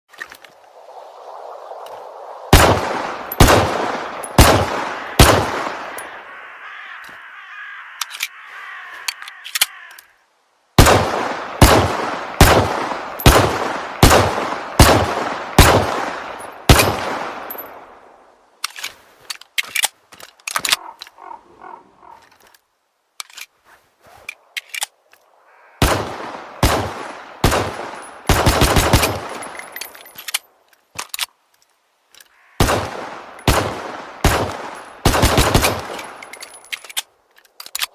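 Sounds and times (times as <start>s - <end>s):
pistol shots: 2.5s - 6.1s, 10.8s - 17.6s, 25.8s - 29.5s, 32.6s - 36.2s.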